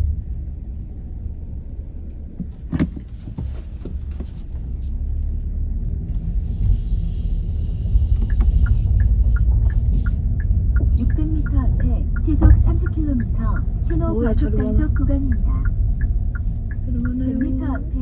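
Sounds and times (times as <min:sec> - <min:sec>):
car engine and road rumble: 0:00.0 - 0:18.0
quick even ticking: 0:07.3 - 0:18.0.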